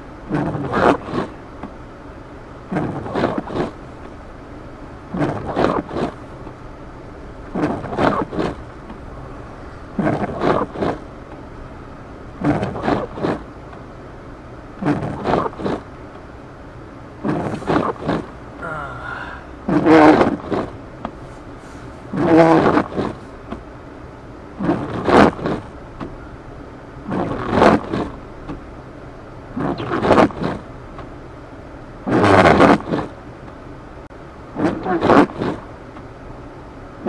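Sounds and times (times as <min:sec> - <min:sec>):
car driving hum: 0:00.0 - 0:37.0
windshield wipers scraping: 0:00.3 - 0:01.7, 0:02.7 - 0:04.2, 0:05.1 - 0:06.6, 0:07.4 - 0:09.2, 0:09.8 - 0:11.5, 0:12.4 - 0:13.6, 0:14.8 - 0:16.0, 0:17.2 - 0:18.7, 0:19.7 - 0:23.7, 0:24.6 - 0:26.2, 0:27.0 - 0:28.7, 0:29.6 - 0:31.2, 0:32.1 - 0:33.2, 0:34.6 - 0:36.1.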